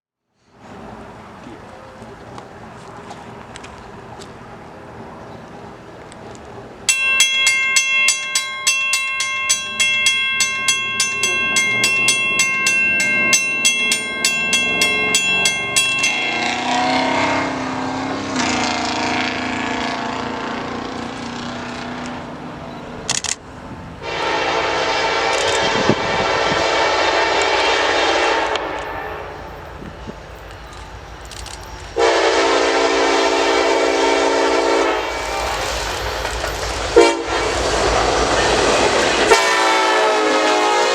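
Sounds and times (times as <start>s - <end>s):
crossing bell ringing: 6.9s - 20.9s, 26.2s - 40.9s
locomotive air horn blasts: 24.0s - 29.4s, 32.0s - 35.7s, 37.0s - 37.6s, 39.2s - 40.9s.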